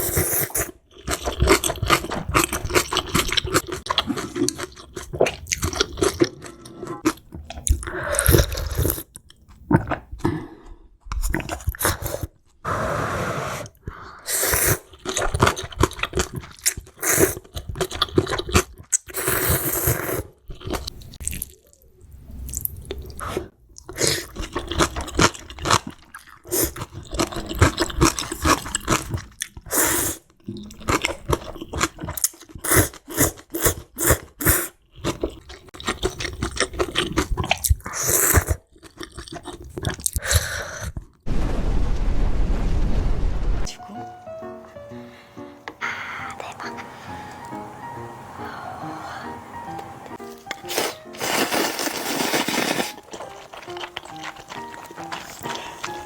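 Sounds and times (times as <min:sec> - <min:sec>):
slurping noodles: 0:00.0 - 0:09.1, 0:11.2 - 0:21.5, 0:22.5 - 0:41.0, 0:50.2 - 0:56.0
wet chewing and smacking: 0:00.0 - 0:10.3, 0:11.0 - 0:12.6, 0:14.8 - 0:19.3, 0:20.2 - 0:41.2, 0:50.1 - 0:56.0.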